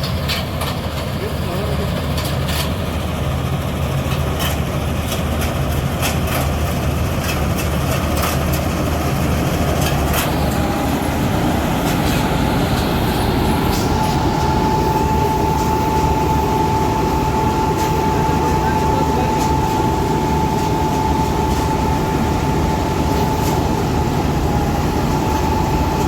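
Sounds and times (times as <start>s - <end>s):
machinery clicks and clatter: 0.0s - 2.8s, 4.0s - 9.0s, 9.6s - 10.7s
harvester engine drone: 0.0s - 26.0s
thin steady whine: 0.0s - 26.0s.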